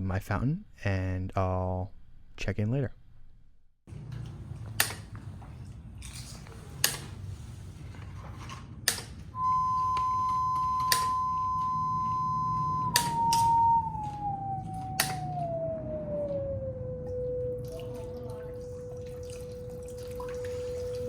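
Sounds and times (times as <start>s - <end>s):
steady sine tone: 9.4s - 21.0s.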